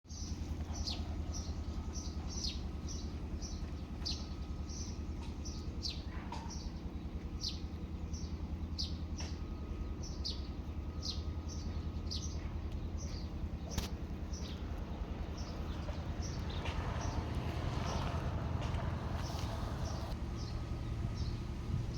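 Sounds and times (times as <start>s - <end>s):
bird chirping: 0.1s - 21.5s.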